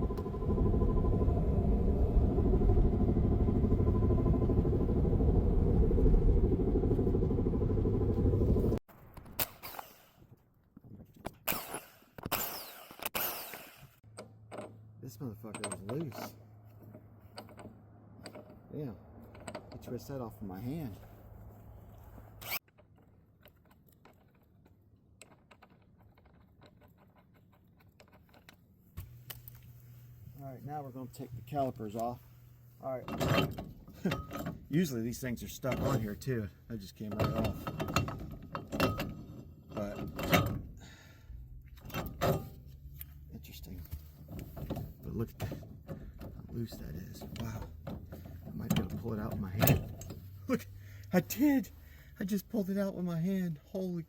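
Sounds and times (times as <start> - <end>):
car wheel bearing rumble: 0.0 - 8.8, 14.0 - 21.0, 32.2 - 51.9.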